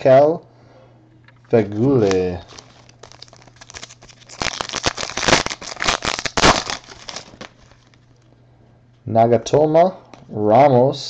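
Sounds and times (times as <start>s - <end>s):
wrapper crinkling and tearing: 1.8s - 8.0s.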